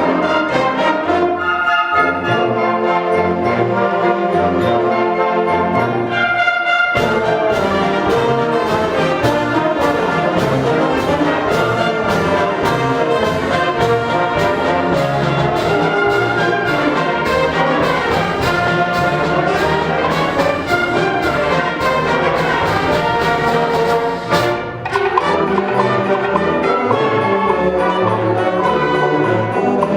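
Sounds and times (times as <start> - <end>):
brass section: 0.0 - 29.9
concert band playing: 7.0 - 29.9.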